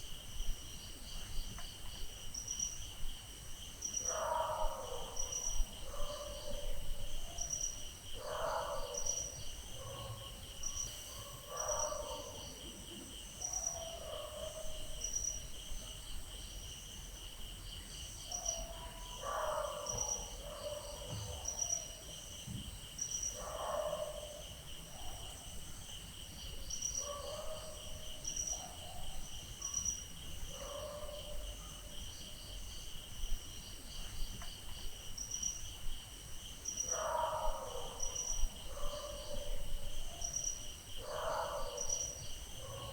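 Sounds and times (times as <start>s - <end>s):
crickets chirping: 0.0s - 42.9s
distant dogs barking: 4.0s - 16.0s, 18.3s - 22.2s, 23.2s - 25.7s, 26.8s - 32.6s, 36.7s - 42.9s.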